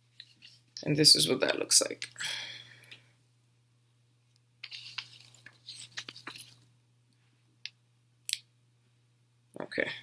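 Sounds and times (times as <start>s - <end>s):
packaging rustling and crinkling: 4.6s - 6.6s.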